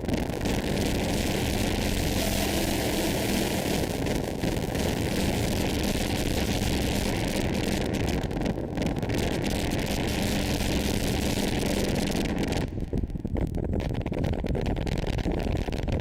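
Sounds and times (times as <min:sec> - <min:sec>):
synthesized noise drone: 0:00.1 - 0:07.4.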